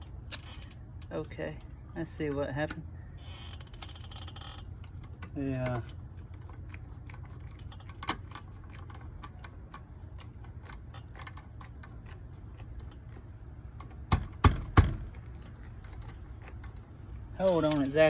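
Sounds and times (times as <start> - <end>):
steady low hum: 0.0 - 18.0
sharp knocks: 14.1 - 15.1.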